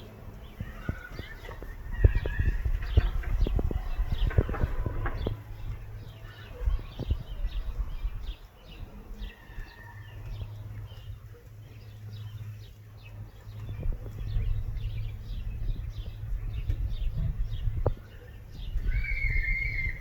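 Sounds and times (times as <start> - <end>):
small birds chirping: 0.0 - 20.0
low thumps: 0.9 - 6.1
bird whistle: 18.8 - 20.0.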